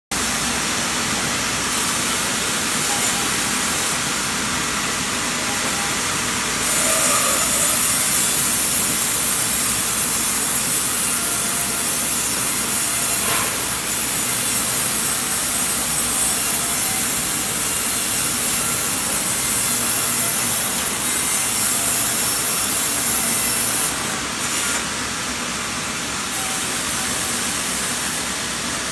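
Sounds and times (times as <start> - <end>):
sawmill saw ripping timber: 6.4 - 25.3.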